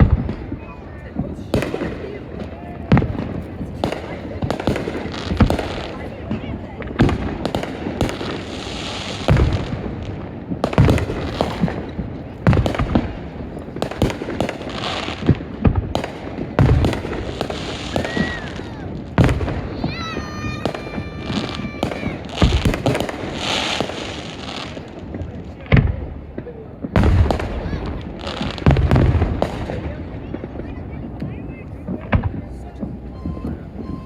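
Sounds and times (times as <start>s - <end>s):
fireworks booming: 0.0s - 34.0s
fireworks crackling: 0.0s - 34.0s
steady whistle-like tone: 32.6s - 34.0s.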